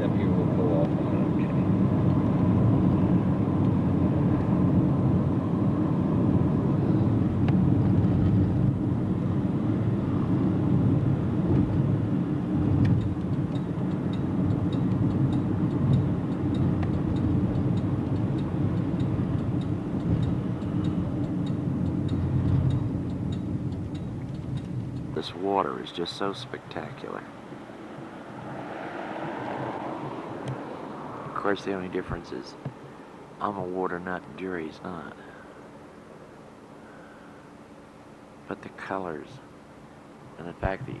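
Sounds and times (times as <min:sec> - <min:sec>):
car engine and tyre rumble: 0:00.0 - 0:41.0
turn signal ticking: 0:10.6 - 0:25.4, 0:27.4 - 0:31.4.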